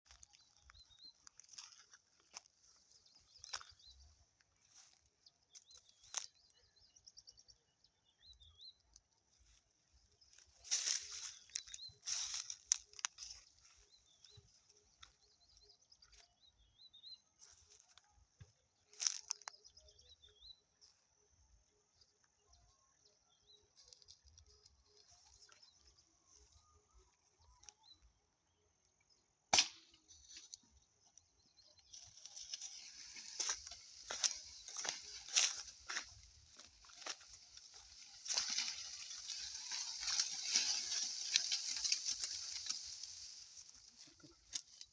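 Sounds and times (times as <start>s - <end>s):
birds chirping: 0.0s - 20.8s, 30.0s - 44.9s
rustling: 32.0s - 44.9s.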